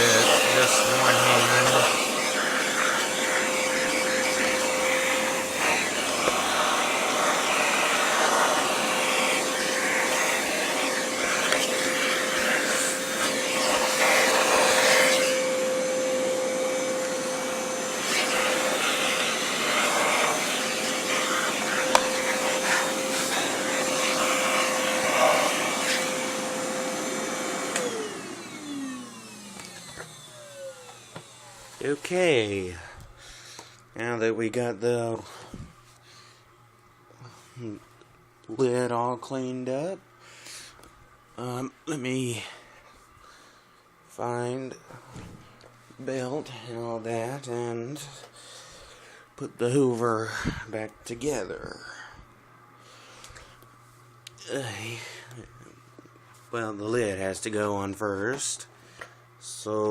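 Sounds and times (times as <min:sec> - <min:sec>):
hand vacuum running: 0:00.0 - 0:33.9.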